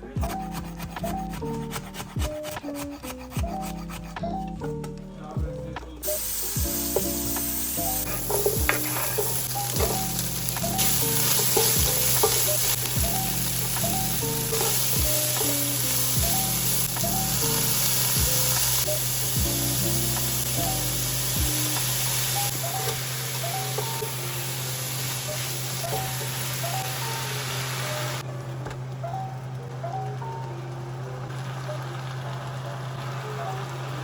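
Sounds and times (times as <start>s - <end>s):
background music with beat: 0.0s - 24.1s
food sizzling in a frying pan: 6.0s - 28.2s, 31.3s - 34.0s.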